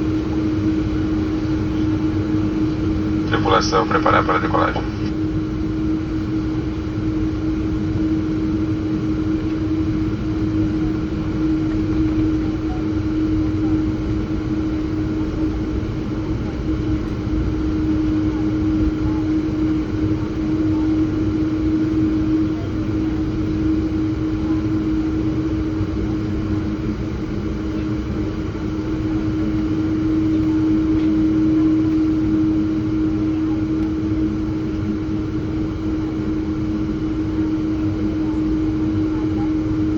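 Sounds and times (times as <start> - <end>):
constant low drone: 0.0 - 39.9
jet engines roaring: 2.4 - 5.3.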